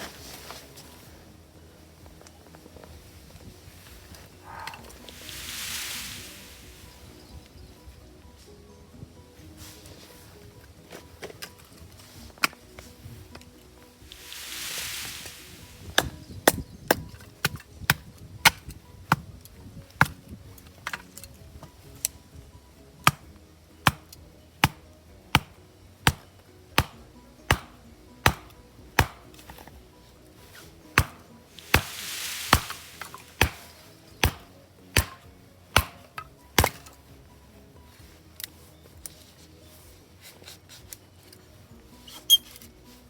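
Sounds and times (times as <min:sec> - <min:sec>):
faint background music: 0:00.0 - 0:43.0
axe chopping firewood: 0:10.9 - 0:13.4, 0:14.1 - 0:22.2, 0:23.0 - 0:29.8, 0:30.4 - 0:37.3.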